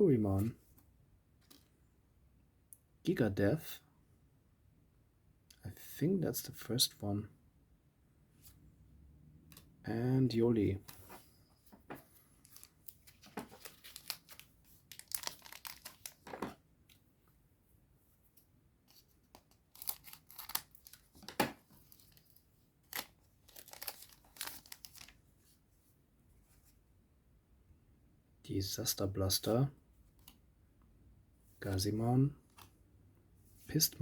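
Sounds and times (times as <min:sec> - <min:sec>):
foil wrapper tearing and crinkling: 0:13.5 - 0:16.2, 0:19.7 - 0:21.0, 0:22.9 - 0:25.2.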